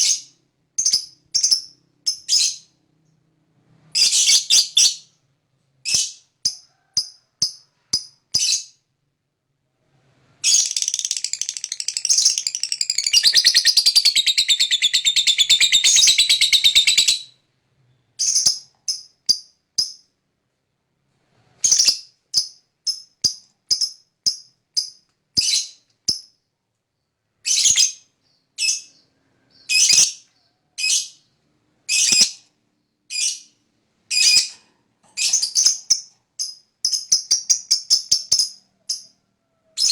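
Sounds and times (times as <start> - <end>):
lovebird chirping and trilling: 0.0 - 2.8, 4.0 - 5.2, 5.8 - 8.8, 10.4 - 17.4, 18.0 - 20.0, 21.6 - 26.2, 27.4 - 31.3, 31.9 - 32.4, 33.1 - 34.6, 35.2 - 39.2.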